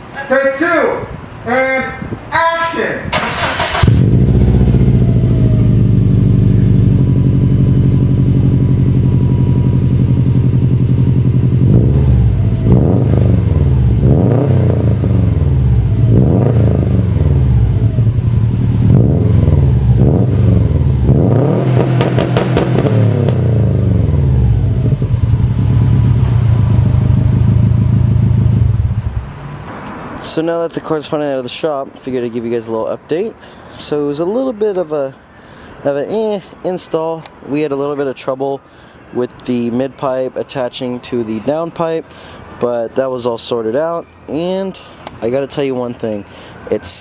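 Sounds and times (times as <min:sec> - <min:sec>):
car engine idling and revving: 0:03.4 - 0:29.7.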